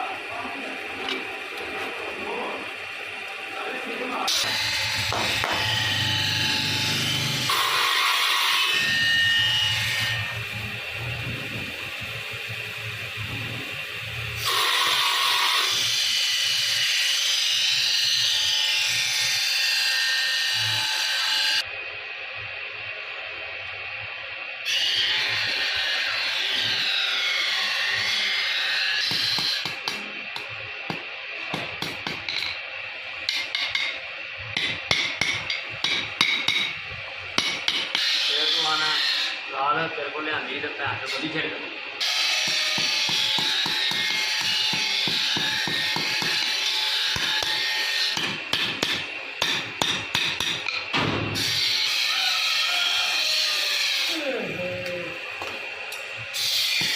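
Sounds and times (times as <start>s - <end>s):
power grinder whining on steel: 0.1s - 21.7s, 24.6s - 30.5s
hammer striking steel: 4.3s - 6.2s, 29.0s - 32.6s, 33.2s - 36.8s, 37.4s - 38.2s, 42.4s - 51.6s.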